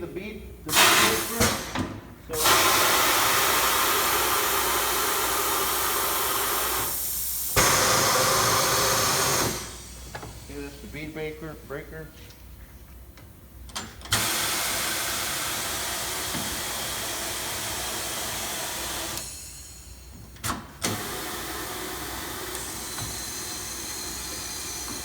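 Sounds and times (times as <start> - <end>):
compressed air hissing: 0.7 - 1.8, 2.4 - 11.0.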